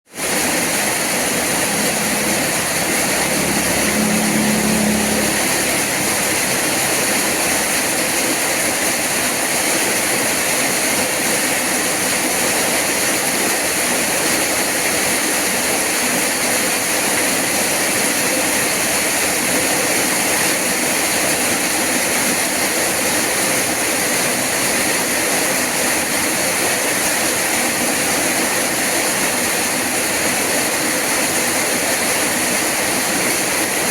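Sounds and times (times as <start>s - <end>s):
rain falling: 0.1s - 33.9s
low hum: 0.6s - 7.2s.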